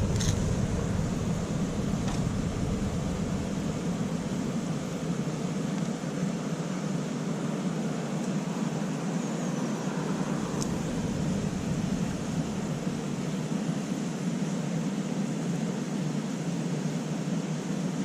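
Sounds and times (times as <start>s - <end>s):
steady rushing noise: 0.0s - 6.4s, 9.8s - 14.3s.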